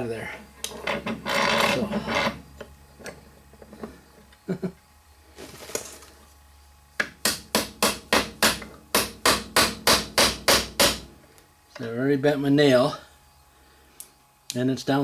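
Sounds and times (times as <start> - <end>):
hammer striking a nail: 7.0 - 11.1.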